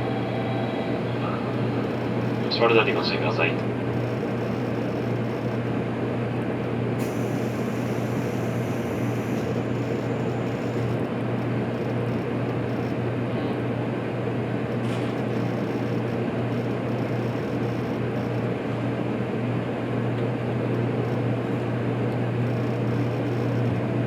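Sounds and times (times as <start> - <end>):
low traction motor hum: 0.0 - 24.0
high hiss: 7.0 - 10.2.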